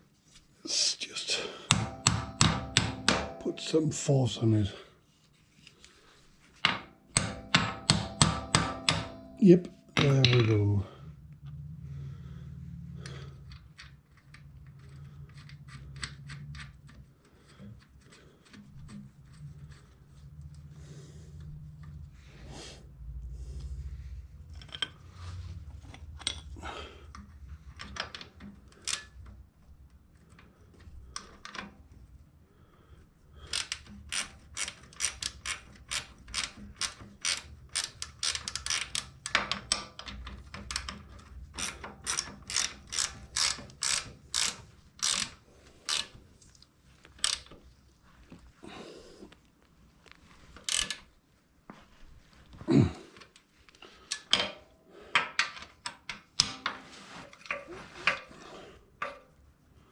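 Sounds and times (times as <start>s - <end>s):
socket ratchet clicking: 33.4s - 46.2s, 47.1s - 47.5s, 50.6s - 51.0s.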